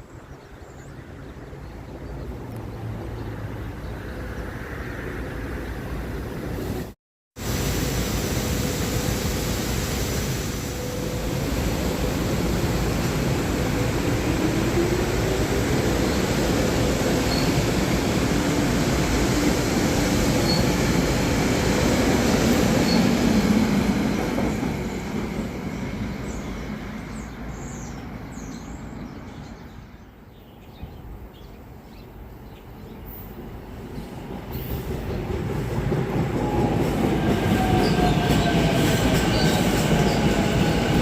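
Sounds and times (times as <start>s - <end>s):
train wheels rumbling on rails: 6.5s - 28.2s, 33.4s - 41.0s.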